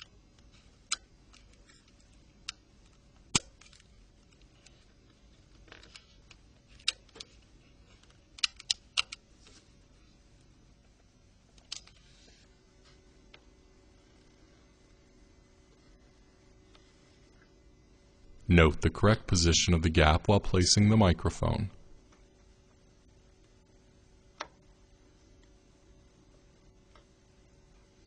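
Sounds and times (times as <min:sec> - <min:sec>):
plastic and metal parts clicking: 0:08.0 - 0:09.2.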